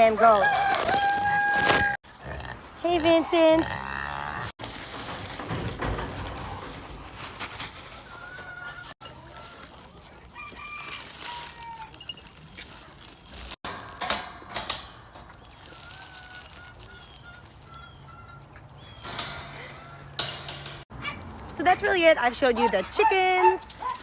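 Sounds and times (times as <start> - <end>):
chickens clucking: 5.0 - 10.8, 15.0 - 20.2.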